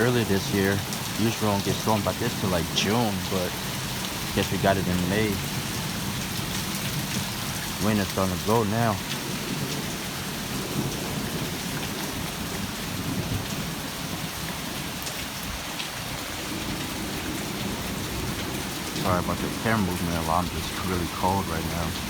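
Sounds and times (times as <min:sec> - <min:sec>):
heavy rain pouring: 0:00.0 - 0:22.0
low rumble of thunder: 0:08.9 - 0:22.0.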